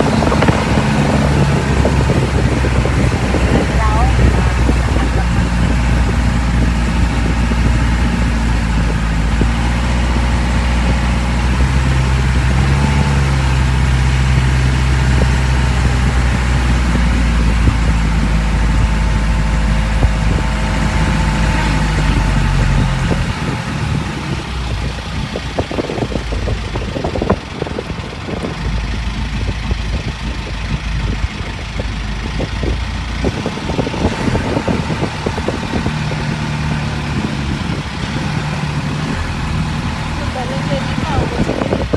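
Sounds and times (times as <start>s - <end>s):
boat engine running: 0.0s - 41.9s.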